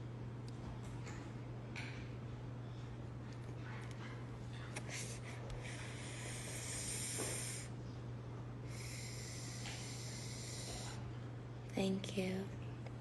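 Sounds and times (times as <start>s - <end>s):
low electrical hum: 0.0s - 13.0s
breathy exhales: 5.0s - 7.8s, 8.7s - 11.1s.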